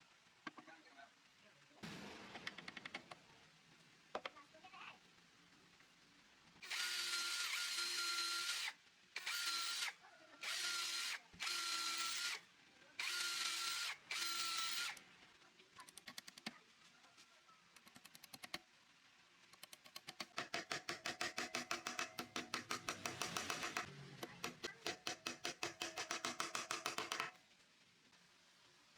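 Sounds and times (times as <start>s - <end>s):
power drill running: 6.6s - 12.4s, 13.0s - 15.0s.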